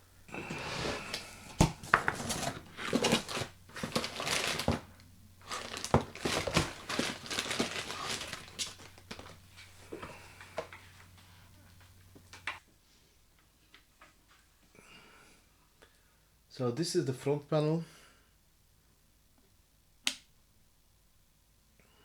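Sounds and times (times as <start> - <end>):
crinkling and rustling: 0.3 - 12.7.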